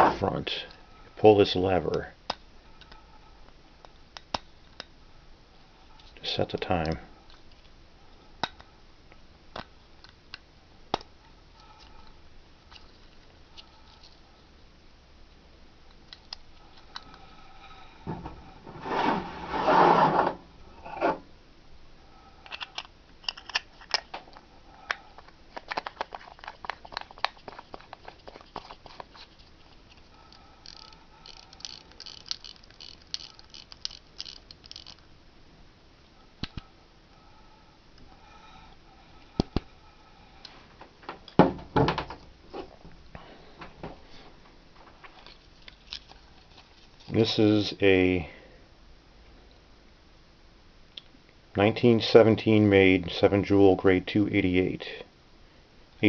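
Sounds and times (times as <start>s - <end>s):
metal scrape: 0.0s - 0.2s, 18.1s - 21.2s.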